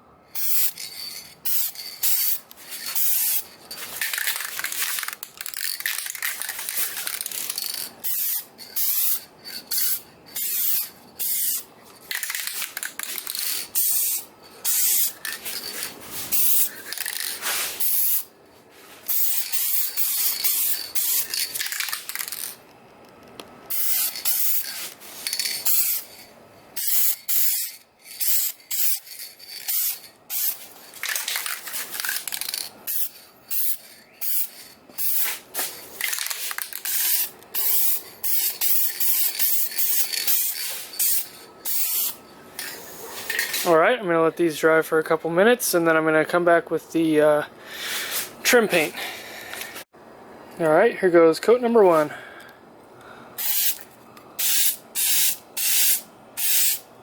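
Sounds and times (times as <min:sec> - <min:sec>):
aerosol spray can hissing: 0:01.5 - 0:03.4, 0:06.0 - 0:09.2, 0:09.8 - 0:11.6, 0:12.3 - 0:15.2, 0:16.3 - 0:16.7, 0:19.1 - 0:21.4, 0:23.7 - 0:26.1, 0:29.7 - 0:30.6, 0:32.4 - 0:42.2, 0:53.4 - 0:53.8, 0:54.4 - 0:56.8.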